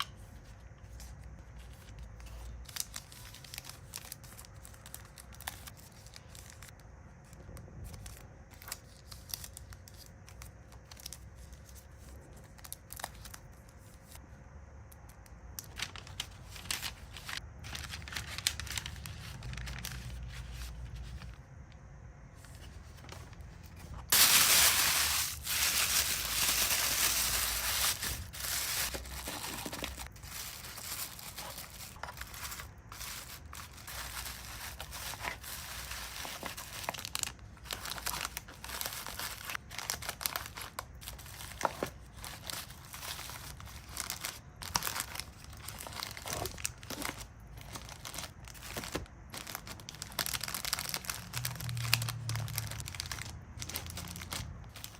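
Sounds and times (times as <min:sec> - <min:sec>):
packaging crinkling and crackling: 0:15.5 - 0:21.5, 0:22.6 - 0:54.9.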